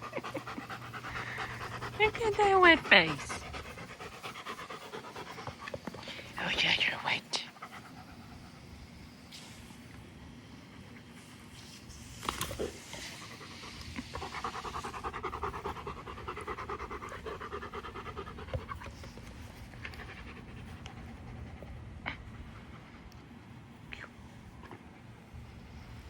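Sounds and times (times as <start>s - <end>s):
dog panting fast: 0.0s - 9.0s, 12.7s - 23.0s.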